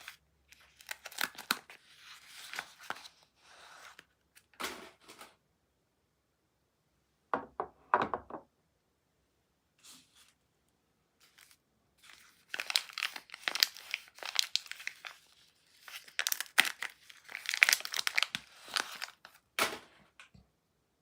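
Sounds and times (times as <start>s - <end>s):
soap wrapper crinkling and tearing: 0.0s - 3.2s, 11.2s - 19.5s.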